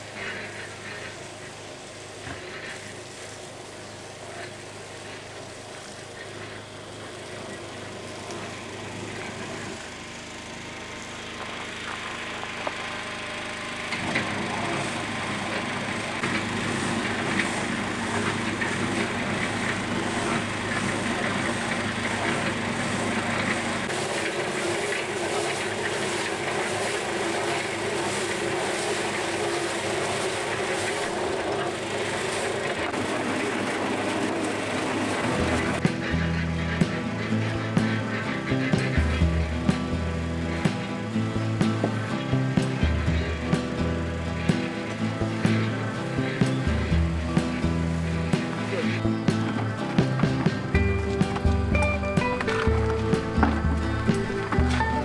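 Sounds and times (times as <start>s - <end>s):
motor-driven machine running: 0.0s - 55.0s.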